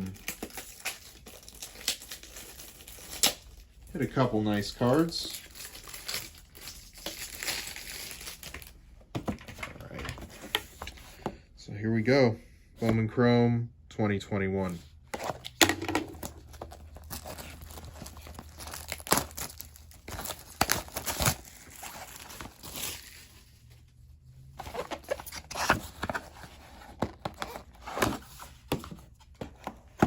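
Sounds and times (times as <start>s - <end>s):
plastic wrap crinkling and tearing: 0.0s - 8.8s, 15.3s - 23.8s.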